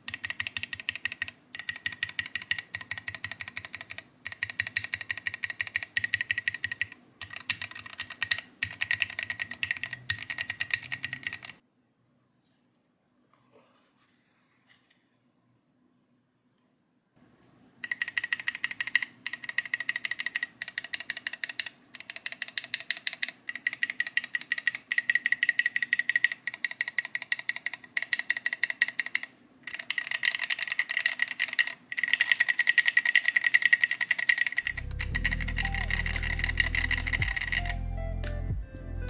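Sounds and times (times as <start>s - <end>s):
mechanical keyboard keys clacking: 0.0s - 11.6s, 17.8s - 38.4s
music: 34.7s - 39.0s.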